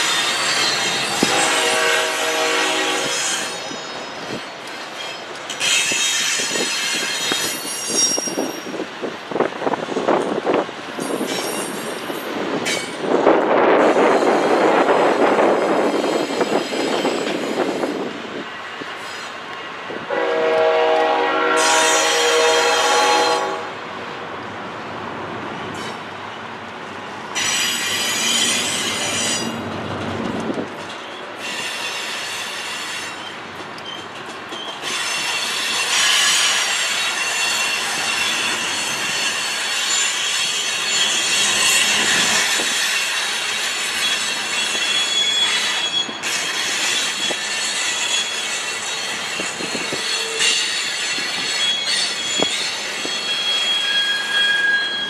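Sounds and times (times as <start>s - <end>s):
train wheels squealing: 0.0s - 1.7s, 2.9s - 8.9s, 11.0s - 13.0s, 13.8s - 18.2s, 19.0s - 19.4s, 25.7s - 26.4s, 27.3s - 29.6s, 30.8s - 55.0s
train rumble: 0.0s - 55.0s
locomotive horn blast: 1.1s - 3.6s, 20.1s - 23.9s.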